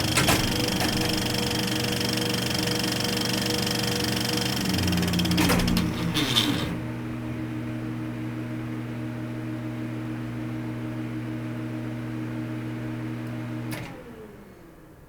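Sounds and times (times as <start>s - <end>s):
film projector motor whirring: 0.0s - 6.9s.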